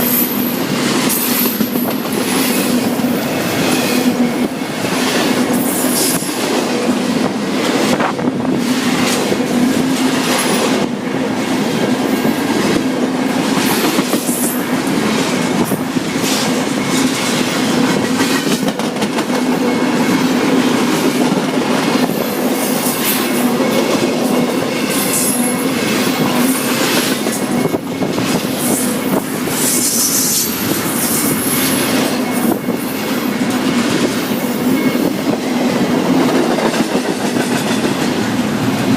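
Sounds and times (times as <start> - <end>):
train wheels rolling on rails: 0.0 - 38.9
clacks over rail joints: 12.6 - 28.7, 36.0 - 38.4.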